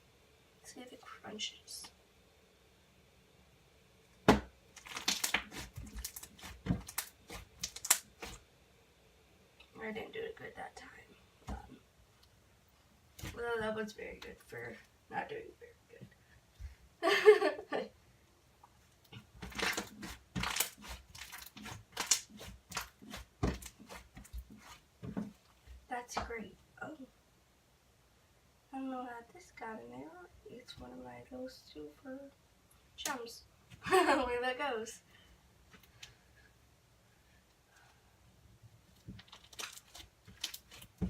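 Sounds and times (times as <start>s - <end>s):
crunchy slime crackling: 4.7s - 8.4s, 19.3s - 24.8s, 38.9s - 41.0s.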